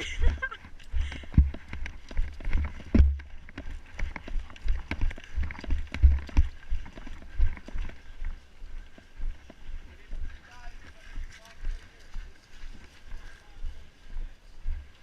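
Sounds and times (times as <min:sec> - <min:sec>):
gear clicking and rattling: 0:00.1 - 0:09.6
footsteps thudding: 0:01.2 - 0:07.9.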